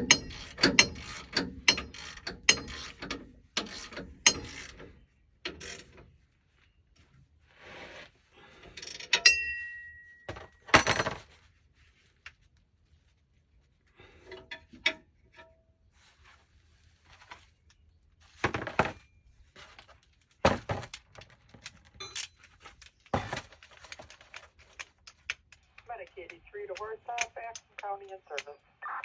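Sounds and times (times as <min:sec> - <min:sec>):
metal tools clinking: 0:00.0 - 0:06.0, 0:08.7 - 0:11.4, 0:21.5 - 0:24.9.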